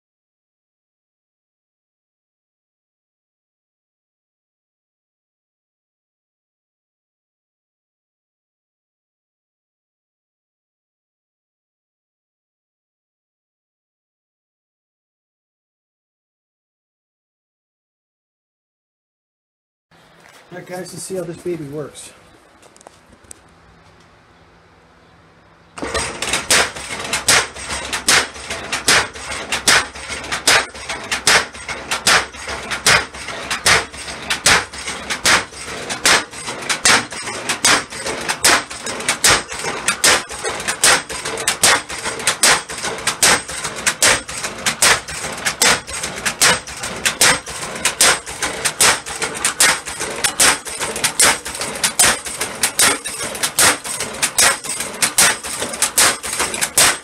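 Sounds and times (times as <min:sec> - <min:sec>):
power hammer striking: 0:25.8 - 0:57.0.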